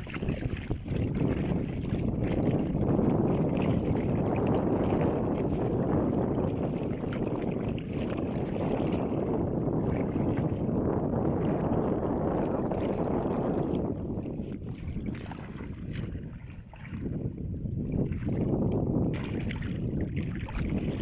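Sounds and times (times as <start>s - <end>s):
boat engine rumbling: 0.0s - 7.6s
wind on microphone: 0.0s - 21.0s.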